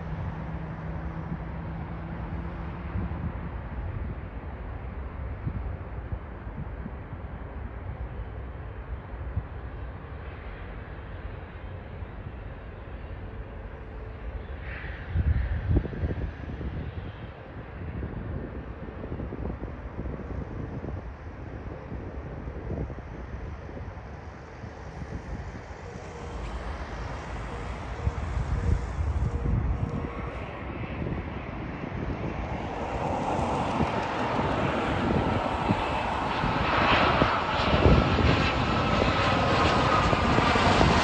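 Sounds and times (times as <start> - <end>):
airliner jet engines: 0.0 - 41.0
wind buffeting microphone: 15.0 - 41.0.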